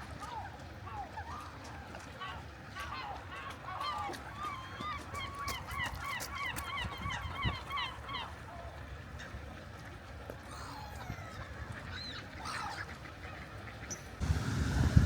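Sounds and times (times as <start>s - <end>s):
waterbirds calling: 0.0s - 15.0s
low steady rumble: 14.2s - 15.0s.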